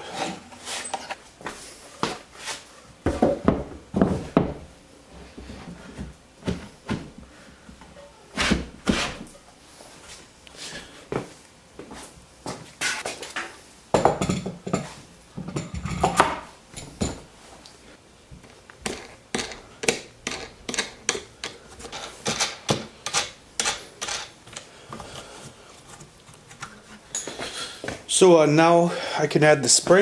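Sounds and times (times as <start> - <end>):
wooden and metal parts clicking: 18.4 - 25.1.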